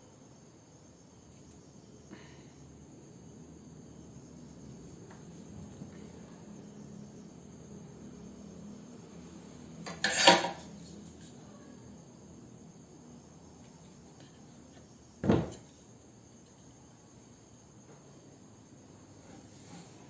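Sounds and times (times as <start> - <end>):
utensils clattering on hard surface: 9.9 - 10.6.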